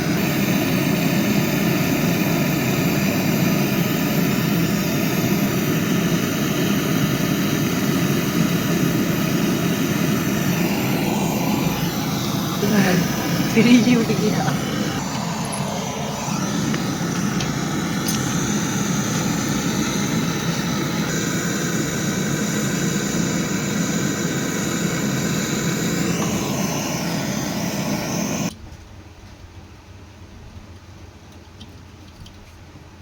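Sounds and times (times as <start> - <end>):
machine running with low hum: 0.0 - 28.5.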